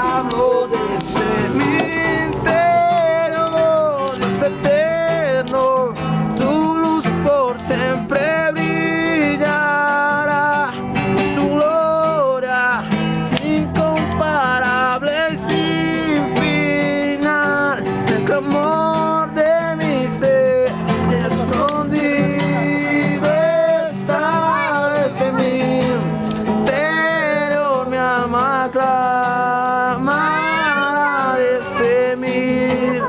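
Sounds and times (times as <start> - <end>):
strummed acoustic guitar: 0.0 - 33.0
voices singing worship song: 0.0 - 33.0.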